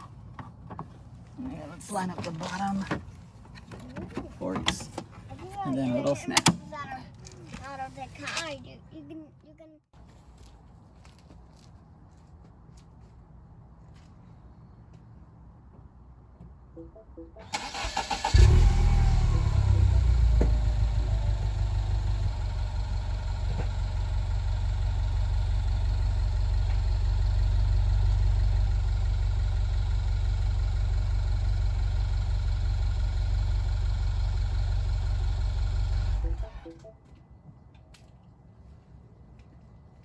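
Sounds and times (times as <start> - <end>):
starter motor cranking: 17.4 - 21.9
car engine idling: 17.4 - 36.9.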